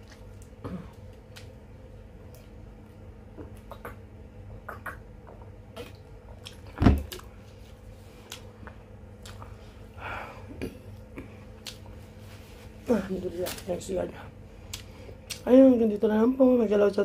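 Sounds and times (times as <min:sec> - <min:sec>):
faint steady hum: 0:00.0 - 0:17.0
small mouth clicks: 0:03.4 - 0:07.3
person chewing: 0:04.8 - 0:07.4, 0:08.1 - 0:09.6, 0:10.6 - 0:12.0, 0:14.6 - 0:15.5.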